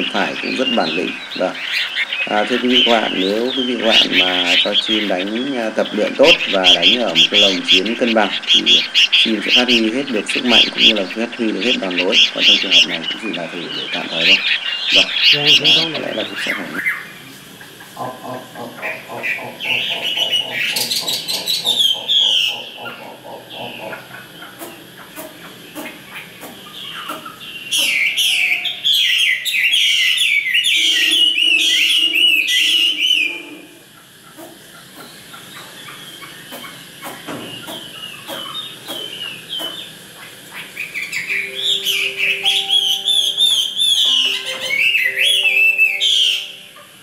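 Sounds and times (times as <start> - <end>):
whistled calls sliding down: 0.0 - 17.2
birds harsh rhythmic chatter: 0.0 - 47.0.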